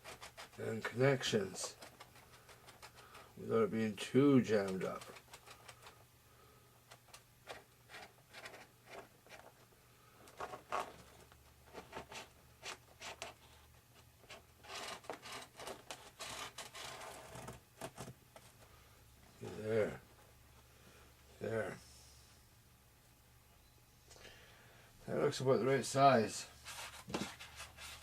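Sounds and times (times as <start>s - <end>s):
scraping and rubbing: 0.0s - 3.5s, 4.5s - 6.0s, 10.2s - 18.6s, 26.5s - 28.0s.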